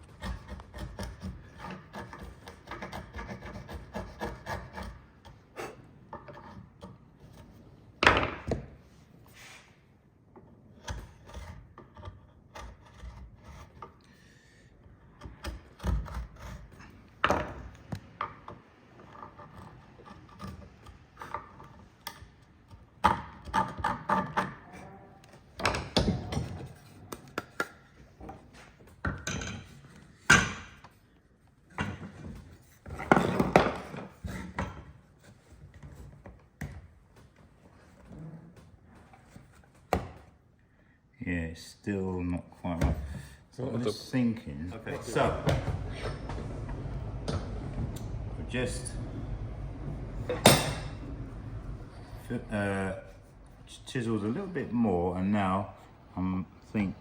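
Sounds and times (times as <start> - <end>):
chisel scraping wood: 0.0 - 7.8, 10.5 - 14.2, 14.8 - 24.8.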